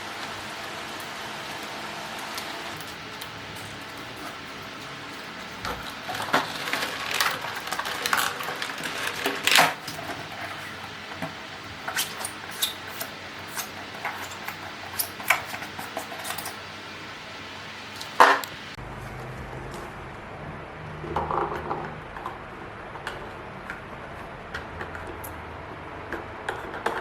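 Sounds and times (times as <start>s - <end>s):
steady hiss: 0.0s - 20.9s
household objects clattering: 1.8s - 16.6s.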